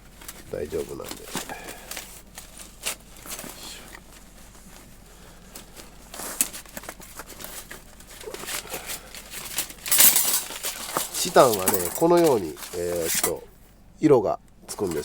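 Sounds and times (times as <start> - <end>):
metal plates clicking and scraping: 8.8 - 13.4
metallic clatter: 9.2 - 13.5.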